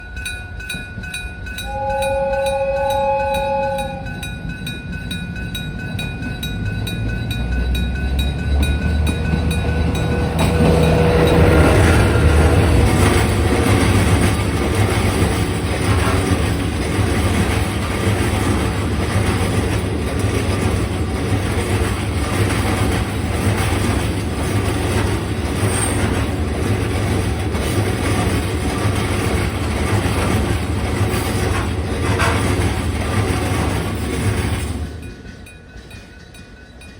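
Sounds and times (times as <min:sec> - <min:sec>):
freight wagons rolling on rails: 0:00.0 - 0:36.9
locomotive engine rumble: 0:00.2 - 0:36.9
two-note locomotive horn: 0:01.6 - 0:04.3, 0:09.9 - 0:12.9.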